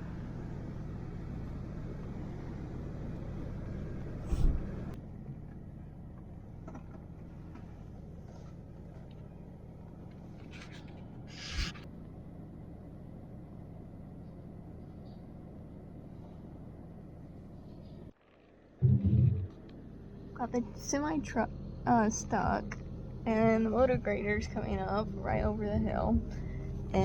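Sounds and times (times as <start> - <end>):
vehicle engine rumbling: 0.0 - 27.0
loud thump: 18.8 - 19.5.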